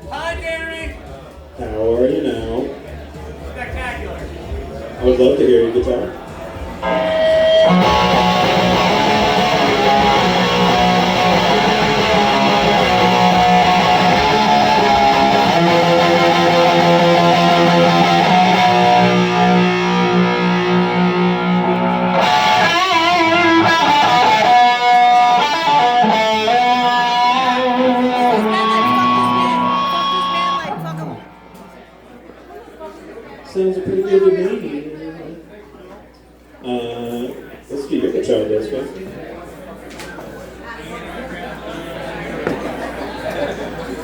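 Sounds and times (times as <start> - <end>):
electric guitar through amplifier: 6.1 - 32.0.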